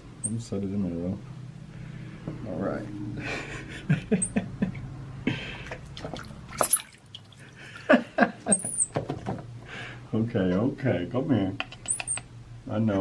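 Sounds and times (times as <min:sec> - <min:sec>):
water splashing in a bathtub: 0:05.6 - 0:07.8
monkey squeak: 0:08.5 - 0:08.9, 0:11.9 - 0:12.3.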